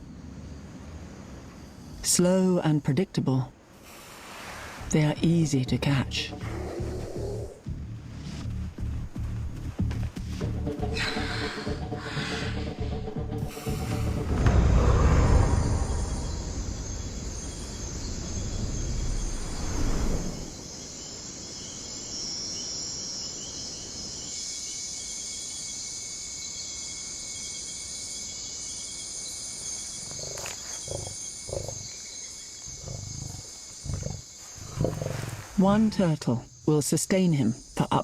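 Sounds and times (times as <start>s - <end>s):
night insects chirring: 0.0s - 38.0s
jaguar growling and grunting: 6.3s - 7.7s, 30.0s - 32.0s, 32.6s - 35.6s
loud low rumble: 12.8s - 20.5s.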